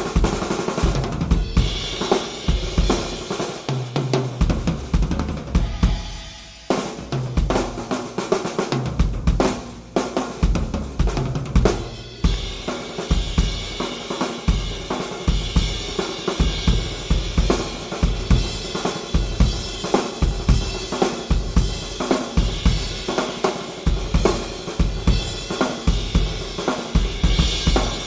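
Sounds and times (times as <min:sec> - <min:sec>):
drum kit groove: 0:00.0 - 0:28.0
cymbal wash: 0:01.5 - 0:08.2.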